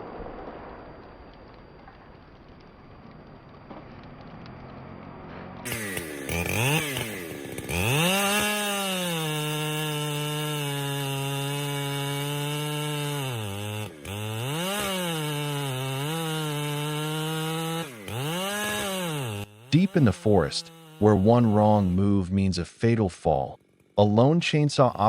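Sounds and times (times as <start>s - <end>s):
chainsaw engine revving: 4.7s - 22.3s.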